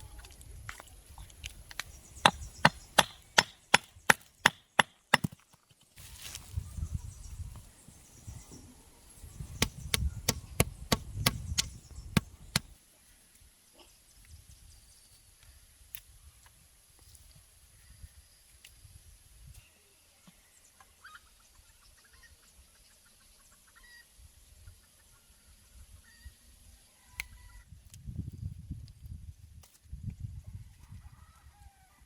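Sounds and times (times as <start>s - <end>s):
chopping on wood: 2.2s - 5.4s, 9.6s - 12.7s.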